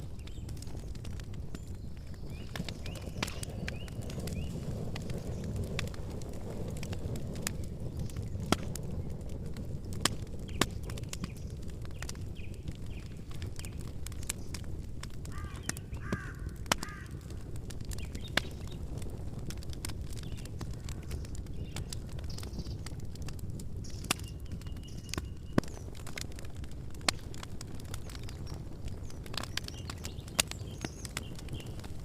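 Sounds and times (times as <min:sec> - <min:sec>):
campfire crackling: 0:00.0 - 0:32.0
bird calling: 0:15.3 - 0:17.3.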